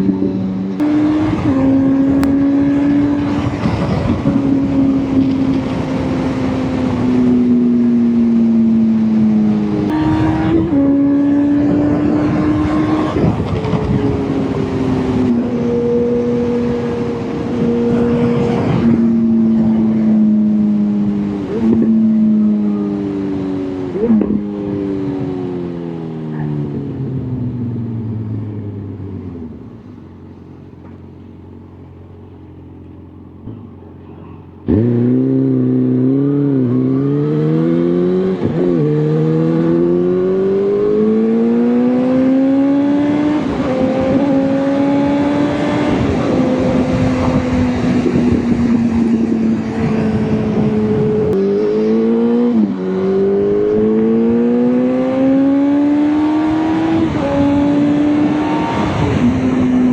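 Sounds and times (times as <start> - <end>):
motorcycle engine revving: 0.0 - 59.9
wind and road noise: 0.0 - 59.9.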